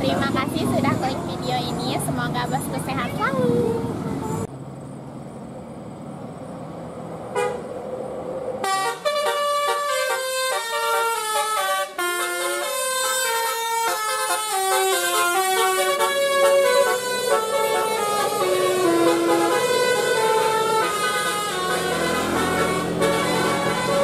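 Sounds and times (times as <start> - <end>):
bus musical horn melody: 7.3 - 7.8, 8.6 - 24.0.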